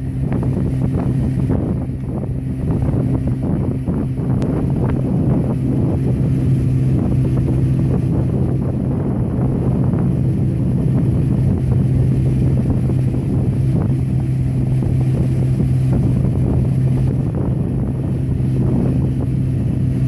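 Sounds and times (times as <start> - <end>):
boat motor humming: 0.0 - 20.0
wind buffeting microphone: 0.0 - 20.0.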